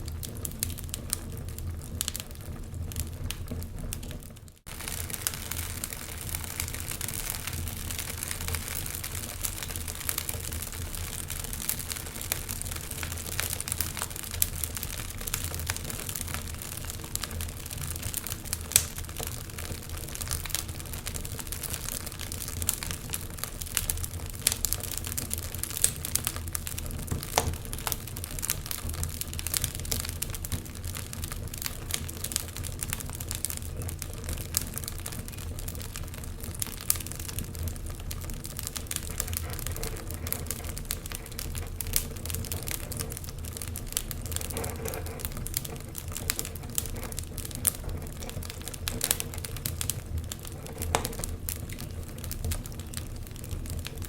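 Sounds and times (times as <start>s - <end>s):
wood fire crackling: 0.0s - 54.0s.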